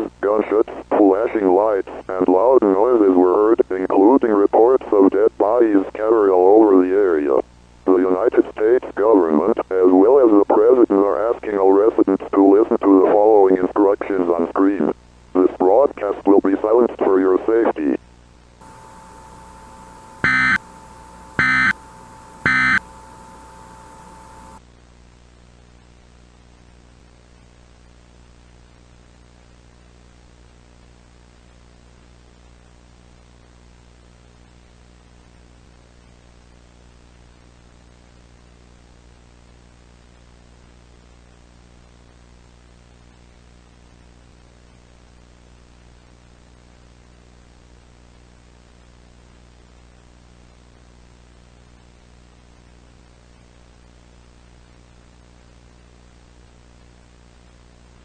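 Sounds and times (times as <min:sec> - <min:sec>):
electrical hum: 0:00.0 - 0:24.6
static hiss: 0:00.0 - 0:24.6.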